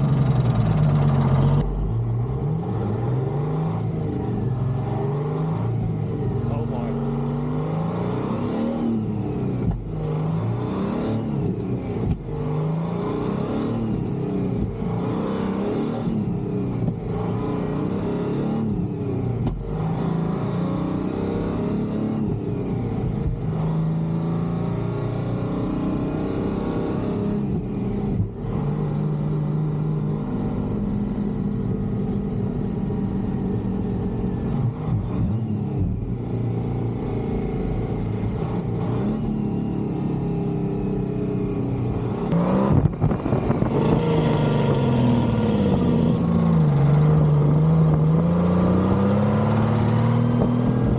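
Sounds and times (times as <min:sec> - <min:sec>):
diesel truck engine shifting gears: 0:00.0 - 0:24.7, 0:26.0 - 0:50.9.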